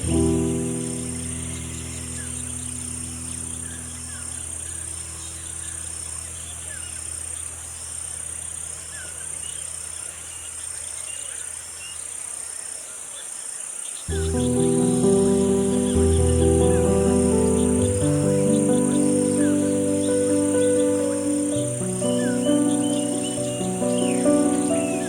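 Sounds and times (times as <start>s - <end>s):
low music chord: 0.0s - 7.0s, 14.1s - 25.0s
pulsing insect call: 0.0s - 12.6s, 14.1s - 25.0s
faint bird chirps: 0.0s - 25.0s
insects droning: 0.0s - 25.0s.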